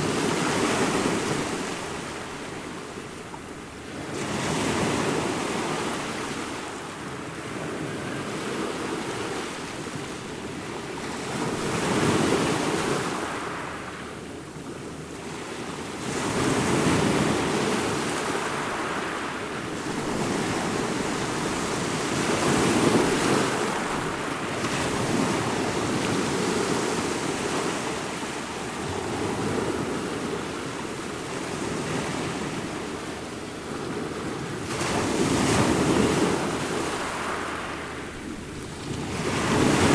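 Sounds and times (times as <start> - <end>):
ocean waves breaking: 15.2 - 39.9.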